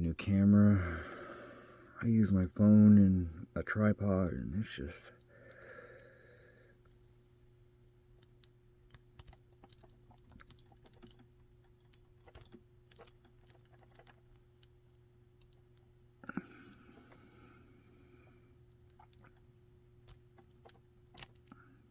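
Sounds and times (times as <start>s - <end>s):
faint steady hum: 0.0s - 21.9s.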